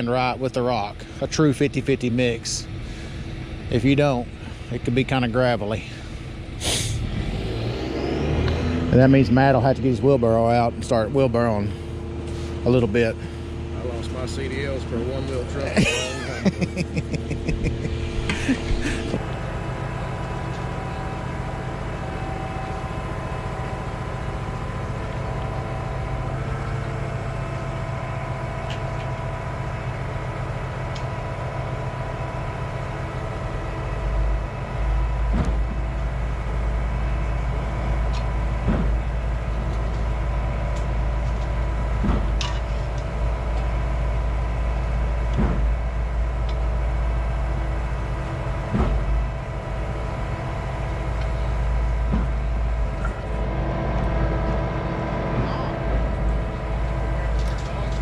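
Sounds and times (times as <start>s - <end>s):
diesel engine running: 0.0s - 58.0s
pump knocking: 38.6s - 39.4s, 42.0s - 42.7s, 45.3s - 46.0s, 48.5s - 49.4s, 51.9s - 53.3s.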